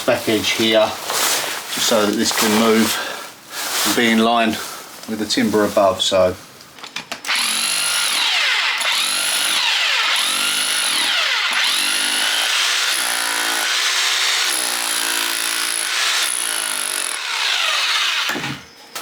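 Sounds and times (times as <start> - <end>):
electric breaker hammer chiselling: 7.3 - 19.0.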